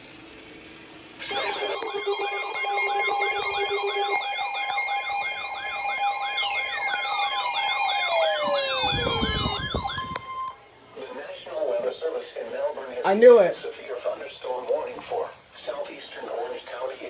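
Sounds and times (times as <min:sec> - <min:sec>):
electronic warbling siren: 0:01.2 - 0:10.6
siren tone sweeping down: 0:01.3 - 0:10.6
two-tone alert signal: 0:01.3 - 0:10.6.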